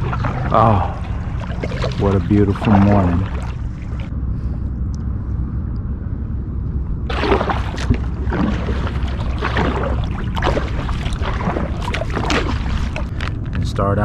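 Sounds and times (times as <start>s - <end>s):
water splashing around a kayak: 0.0s - 4.1s, 7.1s - 13.6s
low rumble: 0.0s - 14.0s.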